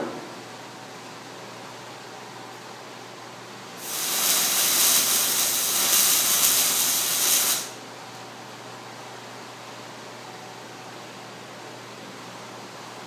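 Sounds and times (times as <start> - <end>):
steady loud hiss: 3.8 - 7.8.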